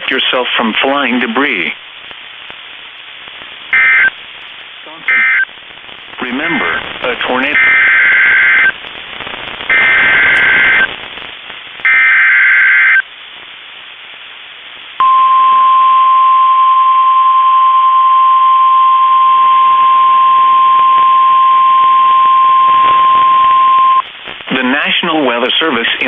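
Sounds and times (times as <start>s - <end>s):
radio hiss: 0.0s - 15.6s, 20.0s - 26.0s
raspy digital data bursts: 3.7s - 4.2s, 6.3s - 11.0s
steady alarm tone: 3.8s - 4.1s, 7.6s - 8.7s, 9.7s - 10.9s, 11.9s - 13.0s.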